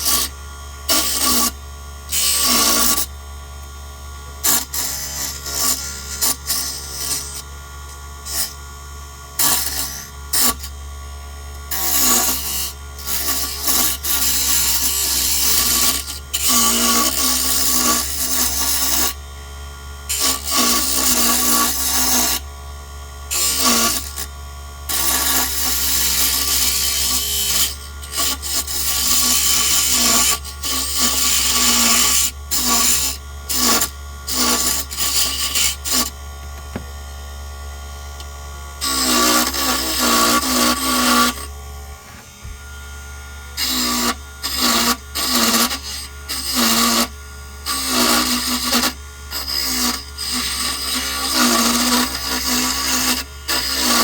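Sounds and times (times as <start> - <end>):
tool scraping spinning wood: 0.0 - 54.0
wood lathe motor hum: 0.0 - 54.0.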